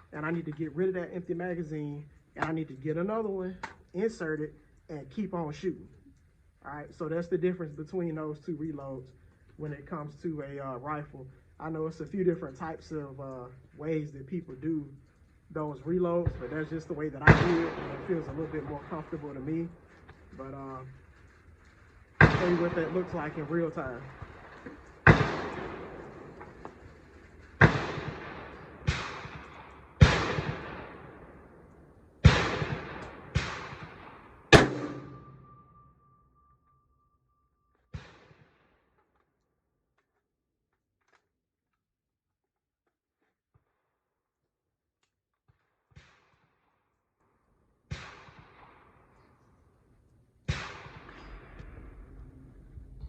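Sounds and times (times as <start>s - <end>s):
rifle shots with echo: 15.6s - 20.8s, 22.1s - 35.8s, 47.9s - 49.4s, 50.4s - 52.5s.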